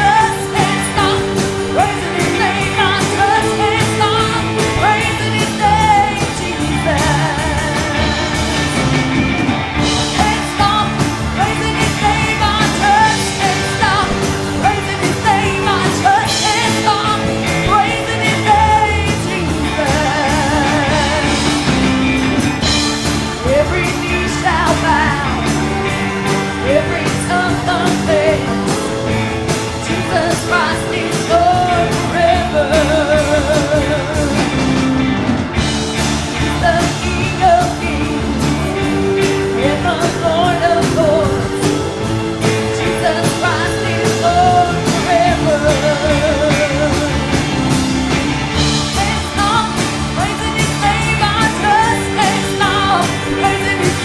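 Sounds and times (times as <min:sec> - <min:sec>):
band music with drums: 0:00.0 - 0:54.0
person singing: 0:00.0 - 0:54.0.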